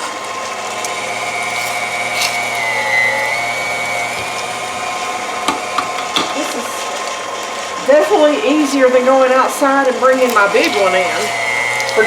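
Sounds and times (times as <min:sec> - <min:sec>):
stand mixer motor whine: 0:00.0 - 0:12.0.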